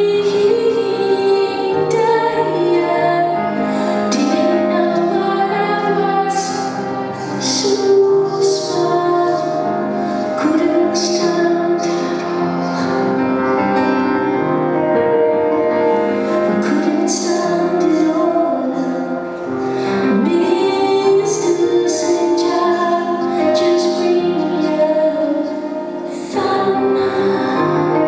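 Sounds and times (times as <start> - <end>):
woman singing: 0.0 - 13.6, 16.1 - 28.0
solo piano: 0.0 - 28.0.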